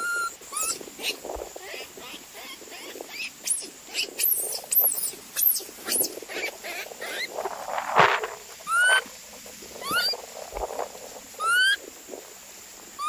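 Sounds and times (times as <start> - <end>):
high-pitched animal squeaks: 0.0 - 7.3, 8.7 - 9.0, 9.8 - 10.2, 11.4 - 11.8.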